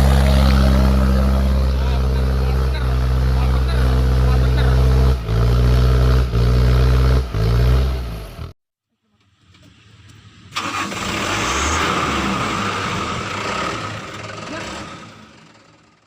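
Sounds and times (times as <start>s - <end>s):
engine revving hard: 0.0s - 8.5s, 10.5s - 15.7s.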